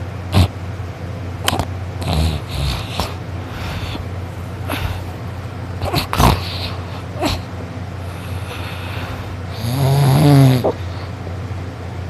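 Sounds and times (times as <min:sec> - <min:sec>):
steady low hum: 0:00.0 - 0:12.0
boy snoring loudly: 0:00.3 - 0:00.5, 0:01.5 - 0:04.0, 0:05.8 - 0:07.5, 0:08.1 - 0:11.0
sharp breath sounds: 0:02.0 - 0:05.2, 0:05.8 - 0:09.7.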